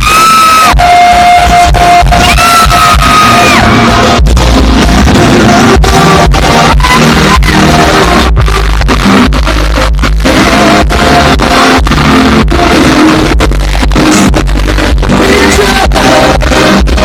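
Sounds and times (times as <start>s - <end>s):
loud live band music: 0.0s - 17.0s.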